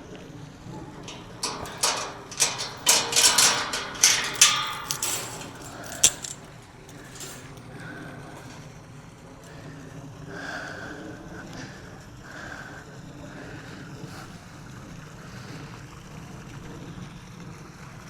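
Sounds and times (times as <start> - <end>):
objects clattering and scraping: 0.9 - 7.6.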